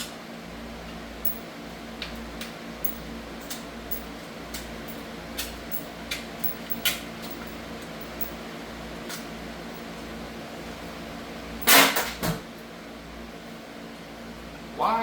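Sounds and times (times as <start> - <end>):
steady low hum: 0.7 - 11.8
metallic clinks of tools and bolts: 1.2 - 1.5, 2.8 - 4.1, 5.7 - 8.4.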